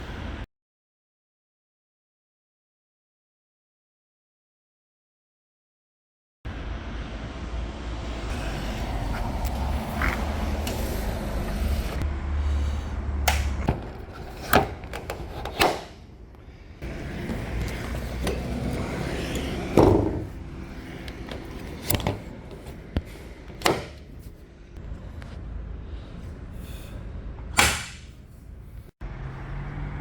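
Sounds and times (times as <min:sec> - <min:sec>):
van doors clunking: 0:21.1 - 0:24.2.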